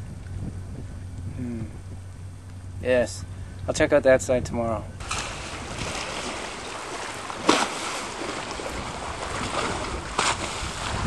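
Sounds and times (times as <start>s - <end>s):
wind on microphone: 0.0s - 11.0s
water moving around kayak: 5.0s - 11.0s
water splash: 5.0s - 11.0s.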